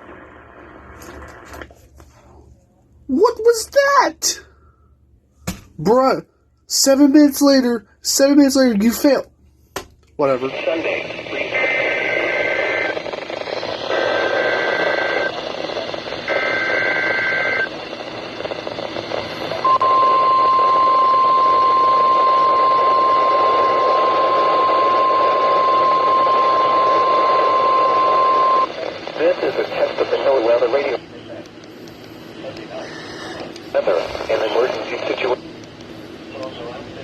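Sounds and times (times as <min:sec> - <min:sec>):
radio receiver hiss: 0:10.3 - 0:20.8, 0:21.6 - 0:36.8
steady warning alarm tone: 0:13.9 - 0:28.7.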